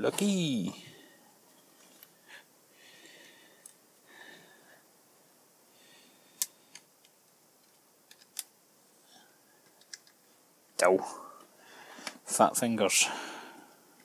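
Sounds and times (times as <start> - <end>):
low room noise: 0.0 - 14.0
small parts and tools clicking: 6.4 - 8.6, 9.6 - 10.3.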